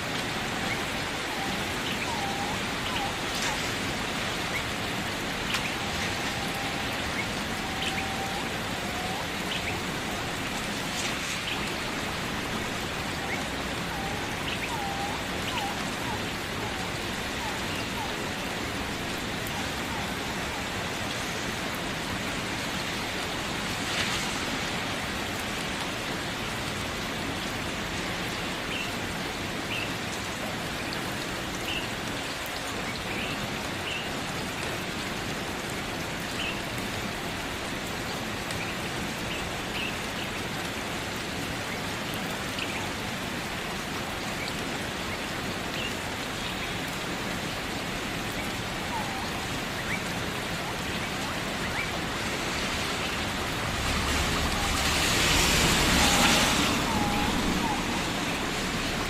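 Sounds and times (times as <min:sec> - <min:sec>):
steady rain falling: 0:00.0 - 0:59.0
loud splash: 0:52.6 - 0:59.0.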